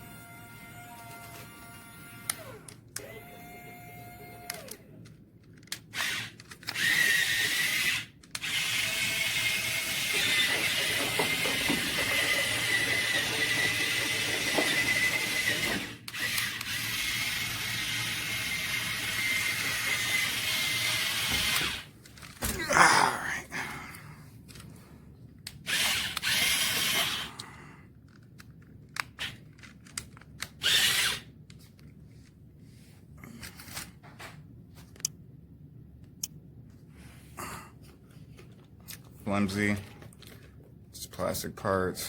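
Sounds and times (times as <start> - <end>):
toy electric motors whining: 0.0 - 5.0, 5.7 - 21.9, 25.6 - 27.5, 29.0 - 29.4, 30.4 - 31.3.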